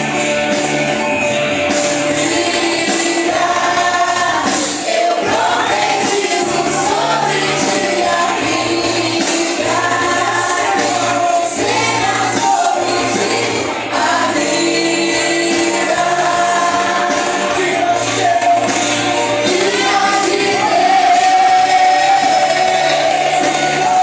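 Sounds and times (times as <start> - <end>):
musical accompaniment: 0.0 - 24.0
group singing gospel song: 1.3 - 24.0.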